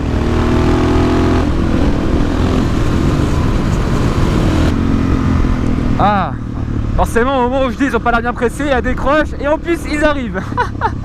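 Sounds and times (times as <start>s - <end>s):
wind rumble on microphone: 0.0s - 7.2s
motorcycle engine running: 0.0s - 11.0s.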